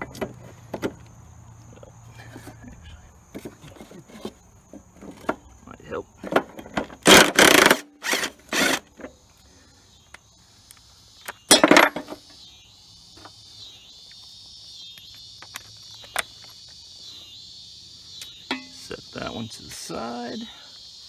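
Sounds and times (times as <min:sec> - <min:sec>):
crickets chirping: 0:00.0 - 0:21.0
impact wrench bursts: 0:07.0 - 0:08.9.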